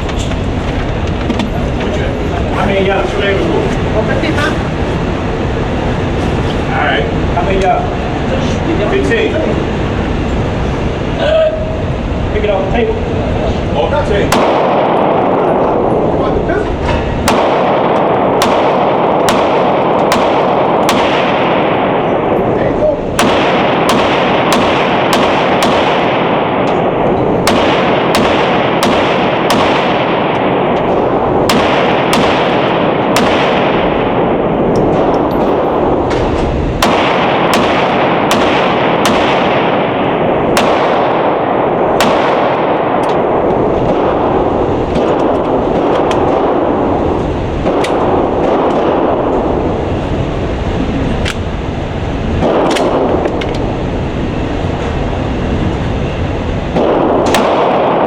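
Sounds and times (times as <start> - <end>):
loud steady background noise: 0.0 - 58.0
pistol shots: 14.3 - 15.2, 17.2 - 21.9, 23.2 - 26.7, 27.4 - 30.8, 31.4 - 34.2, 36.8 - 44.2, 56.8 - 58.0.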